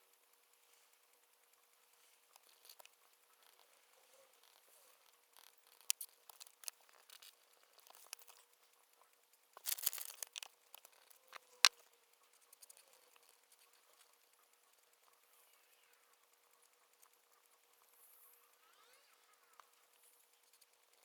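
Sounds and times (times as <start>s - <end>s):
paper rustling: 5.7s - 8.4s, 9.6s - 11.1s.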